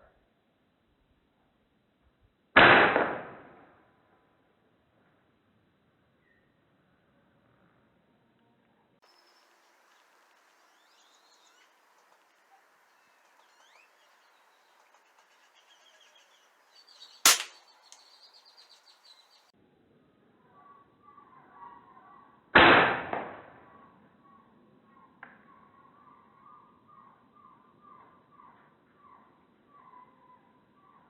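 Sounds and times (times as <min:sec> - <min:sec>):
small birds chirping: 0:09.0 - 0:19.5
air rifle shots: 0:17.3 - 0:17.6.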